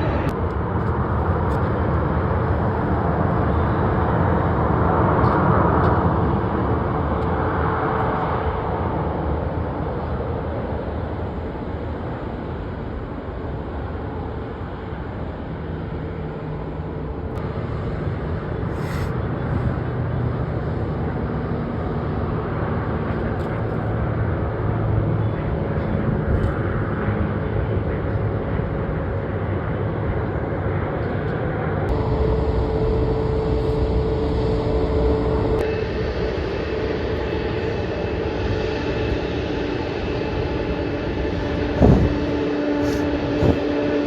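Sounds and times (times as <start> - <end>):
jet engine rushing: 15.8 - 25.6, 31.9 - 44.0
faint steady whine: 31.7 - 44.0.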